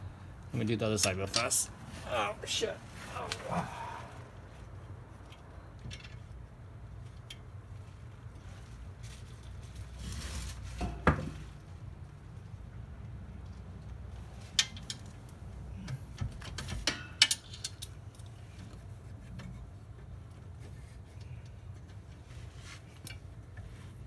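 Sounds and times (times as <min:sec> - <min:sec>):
metal tools clinking: 0:01.0 - 0:01.7, 0:16.8 - 0:18.3.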